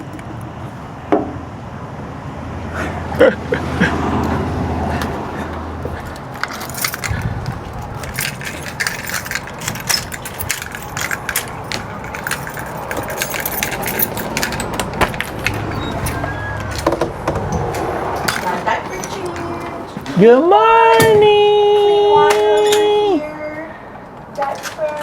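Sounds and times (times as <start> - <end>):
keys jangling: 5.9 - 20.2, 22.1 - 23.3.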